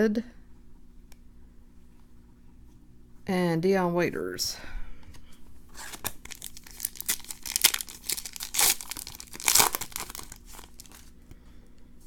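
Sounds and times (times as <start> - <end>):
foil wrapper crinkling and tearing: 5.8 - 11.1.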